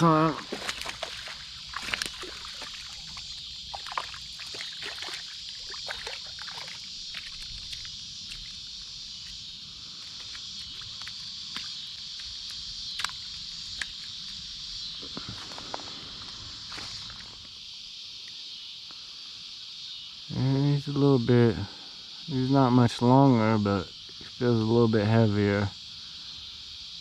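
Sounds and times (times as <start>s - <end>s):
fish splashing in water: 0.4s - 8.7s.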